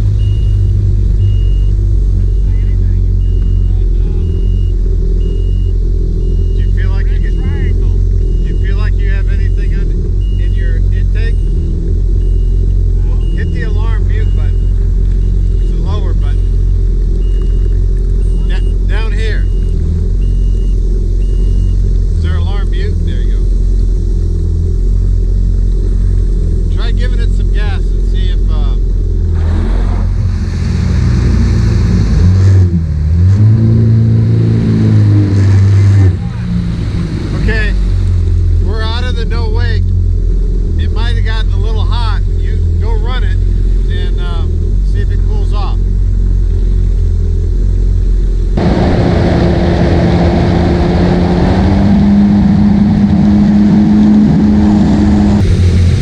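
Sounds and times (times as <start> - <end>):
personal watercraft engine running: 0.0 - 56.0
personal watercraft engine: 29.4 - 56.0
wind and water rushing: 30.0 - 32.6, 36.4 - 38.6.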